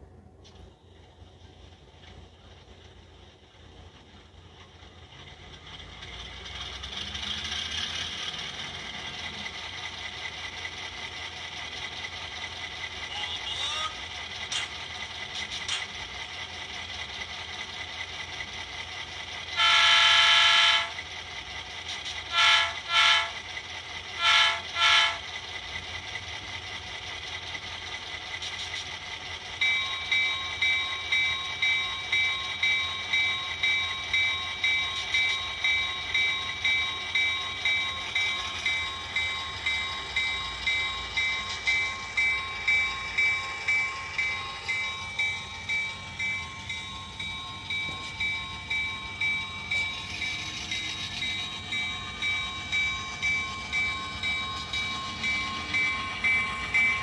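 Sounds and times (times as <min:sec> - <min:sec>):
diesel locomotive horn: 0:19.6 - 0:21.0, 0:22.3 - 0:23.4, 0:24.2 - 0:25.3
steady low hum: 0:28.4 - 0:57.0
locomotive bell ringing: 0:29.4 - 0:57.0.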